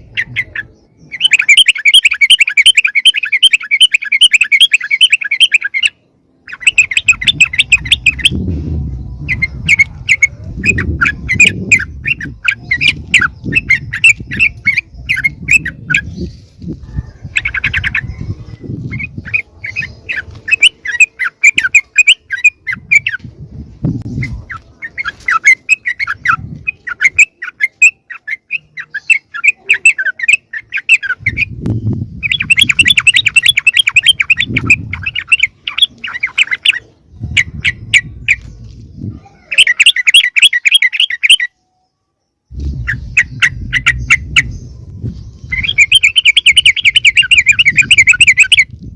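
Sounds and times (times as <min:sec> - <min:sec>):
bulbuls chattering: 0:00.0 - 0:41.5, 0:42.5 - 0:48.9
low thuds and rumbling: 0:08.1 - 0:14.6.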